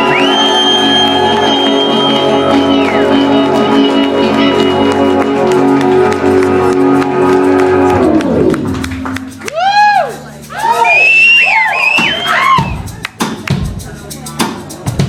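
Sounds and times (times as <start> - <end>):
high whistling tone sliding down: 0.0 - 4.1
band playing droning chords: 0.0 - 10.9.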